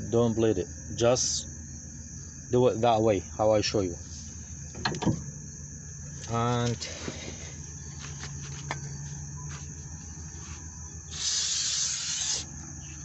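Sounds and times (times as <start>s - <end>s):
aerosol spray hissing: 11.1s - 12.5s.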